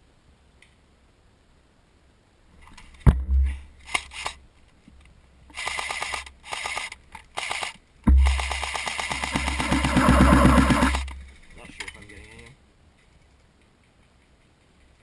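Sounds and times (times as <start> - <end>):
rustling hiss: 0.0 - 15.0.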